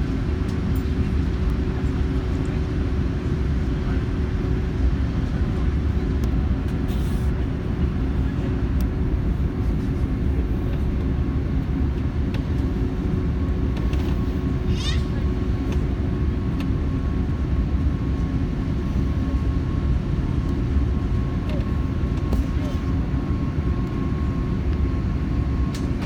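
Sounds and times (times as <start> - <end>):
airliner cabin engine drone: 0.0 - 26.0.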